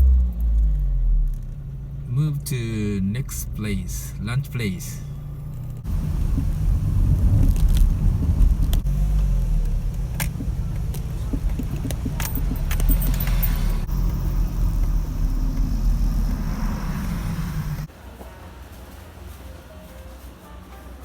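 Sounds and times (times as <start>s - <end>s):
car engine and road rumble: 0.0s - 18.6s
clicks: 8.6s - 13.6s.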